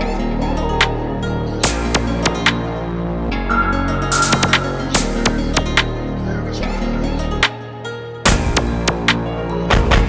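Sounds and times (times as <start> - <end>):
low sustained tones: 0.0 - 7.4
high held note: 1.6 - 5.9.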